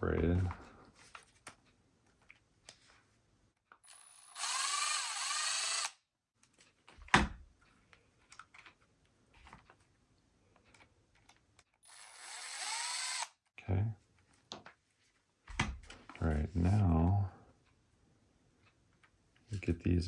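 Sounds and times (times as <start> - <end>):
electric screwdriver running: 3.8 - 6.0, 11.8 - 13.4.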